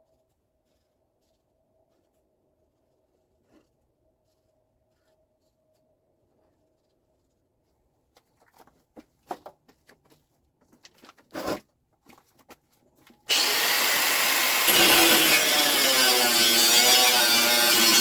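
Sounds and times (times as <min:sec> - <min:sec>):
power tool running: 0:13.3 - 0:18.0.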